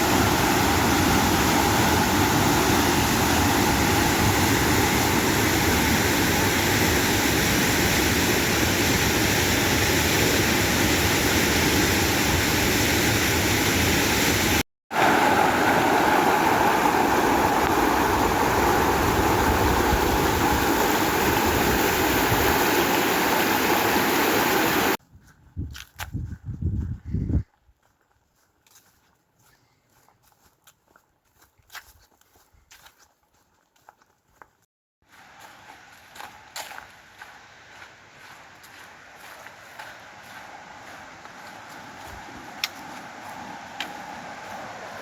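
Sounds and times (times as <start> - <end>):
fast-flowing water rushing: 0.0 - 25.0, 38.0 - 45.0.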